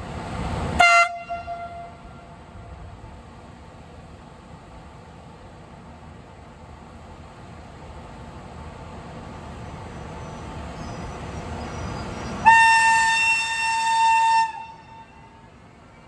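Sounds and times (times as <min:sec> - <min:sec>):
train rumble: 0:00.0 - 0:16.0
locomotive horn blast: 0:00.8 - 0:02.3, 0:12.4 - 0:15.4.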